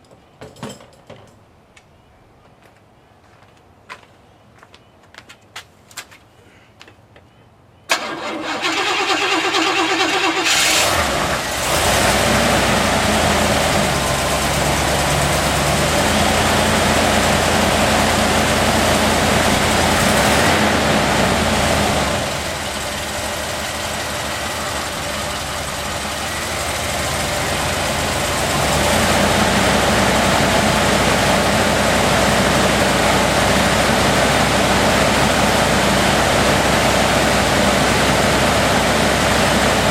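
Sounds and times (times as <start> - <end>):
starter motor cranking: 7.9 - 11.3
car engine idling: 7.9 - 39.9.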